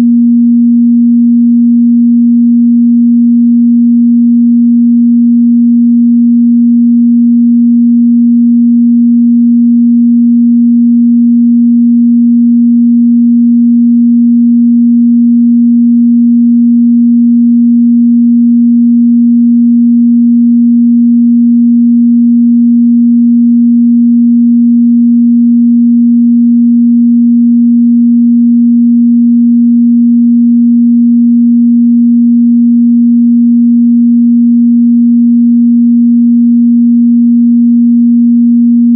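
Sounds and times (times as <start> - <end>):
sine-wave test tone: 0.0 - 38.9.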